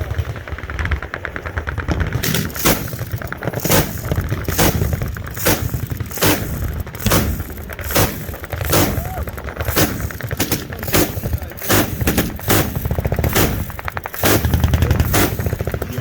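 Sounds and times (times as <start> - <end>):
low din of gunfire: 0.0 - 16.0
rapid gunshots burst: 0.0 - 16.0
loud single gunshots: 4.6 - 15.5.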